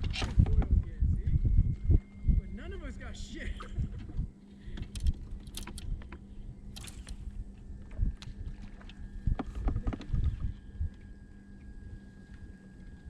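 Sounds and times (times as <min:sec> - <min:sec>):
steady low rumble: 0:00.0 - 0:13.0
knocks and clicks of kayak gear: 0:09.4 - 0:10.3.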